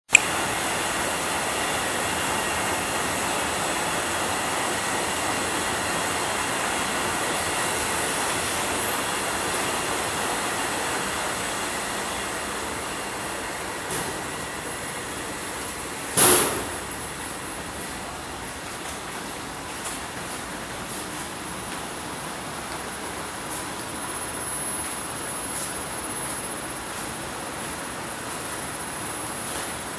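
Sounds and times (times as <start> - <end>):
washing machines running: 0.1 - 29.9
loud hiss: 8.6 - 18.2.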